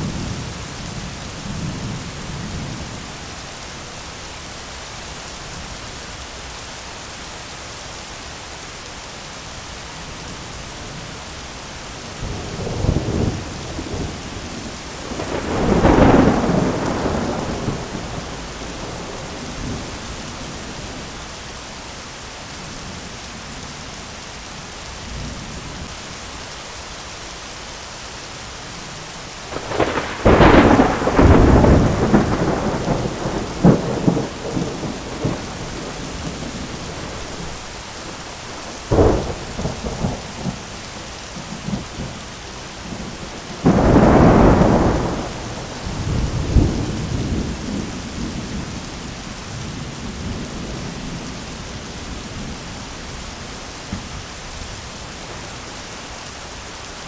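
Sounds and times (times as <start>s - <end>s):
heavy rain: 0.0s - 57.0s
thunder rumbling and cracking: 12.2s - 21.1s, 29.5s - 42.2s, 42.8s - 52.9s.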